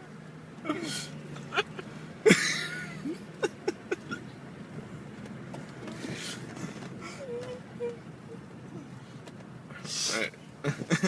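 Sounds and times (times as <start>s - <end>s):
breathy puff: 5.9s - 7.2s.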